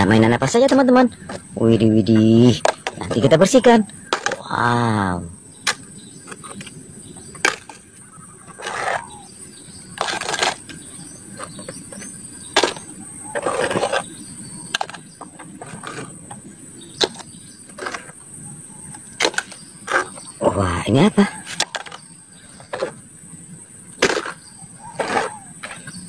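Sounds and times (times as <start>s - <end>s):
toys knocking and clattering: 2.1s - 4.6s, 11.4s - 14.0s, 14.7s - 16.4s, 18.9s - 20.2s, 21.5s - 23.0s
scraping rustles: 9.8s - 14.1s, 14.7s - 18.2s.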